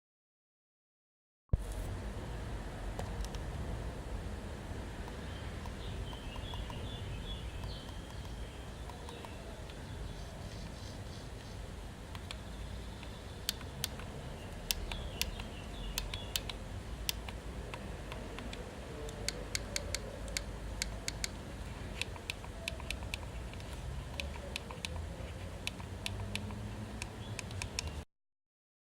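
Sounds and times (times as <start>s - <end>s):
computer mouse clicking: 5.0s - 6.8s, 7.6s - 9.8s, 12.1s - 12.4s, 13.0s - 28.0s.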